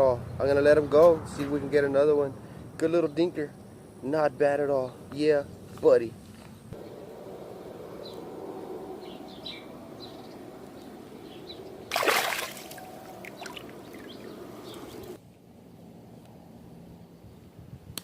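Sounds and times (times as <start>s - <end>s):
birds chirping: 1.9s - 15.2s
splash in water: 11.9s - 14.1s.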